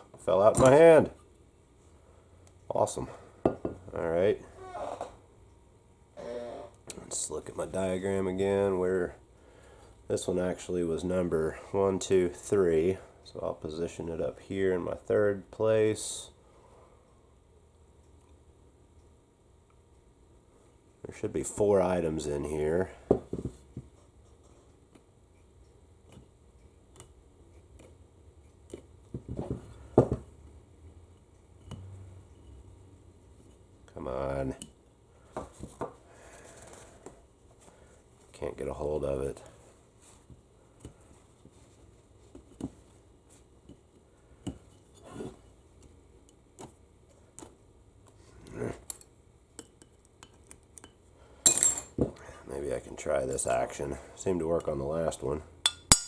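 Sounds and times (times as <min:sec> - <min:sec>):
hand tools tapping metal: 0:55.7 - 0:56.0.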